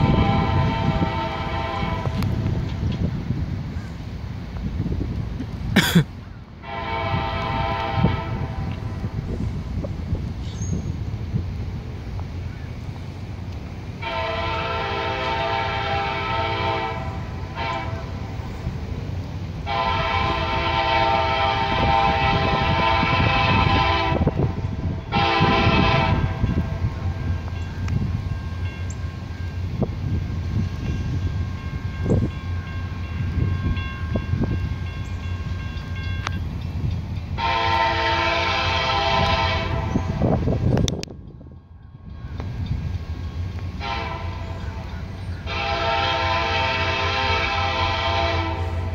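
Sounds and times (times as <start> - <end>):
locomotive air horn blasts: 0.0 - 2.4, 6.6 - 9.2, 14.0 - 18.7, 19.6 - 27.5, 37.4 - 40.7, 43.7 - 48.9
freight train rumble: 0.0 - 48.9.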